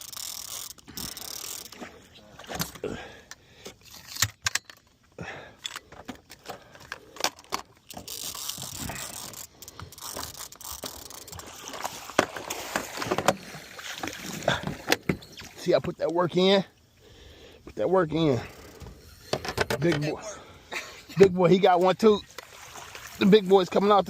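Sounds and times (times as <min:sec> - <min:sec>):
fishing reel gears clicking: 0:00.0 - 0:01.8, 0:07.9 - 0:11.5.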